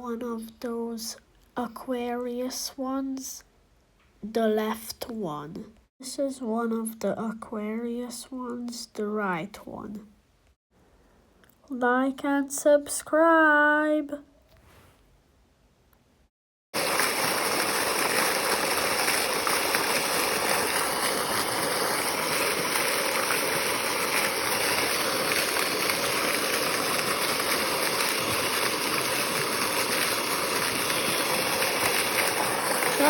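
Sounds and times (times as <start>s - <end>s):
water fountain splashing: 16.8s - 33.0s.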